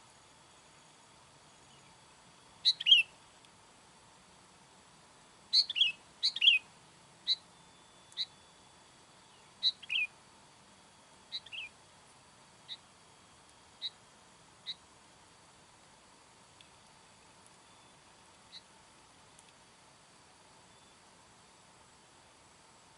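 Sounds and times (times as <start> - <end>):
bulbul whistled calls: 2.6 - 3.2, 5.5 - 8.6, 9.2 - 10.2, 11.3 - 11.8, 12.7 - 12.9, 13.8 - 14.0, 14.6 - 14.8, 17.6 - 18.7.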